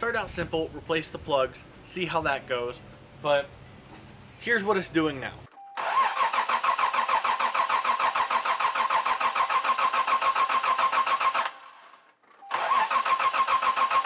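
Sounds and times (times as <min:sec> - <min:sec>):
starter whine: 0:05.0 - 0:14.0
engine cranking on starter: 0:05.8 - 0:14.0.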